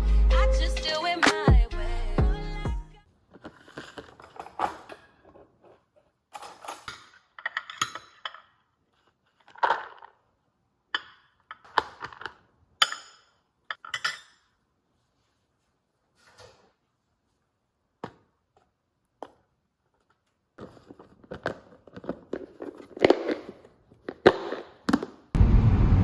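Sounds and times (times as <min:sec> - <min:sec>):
dishes and utensils clinking: 0:06.3 - 0:08.6, 0:12.8 - 0:14.6.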